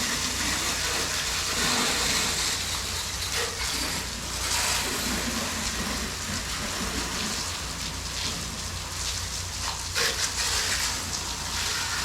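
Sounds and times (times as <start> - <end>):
pressure washer spraying water: 0.0 - 6.6, 9.7 - 12.0.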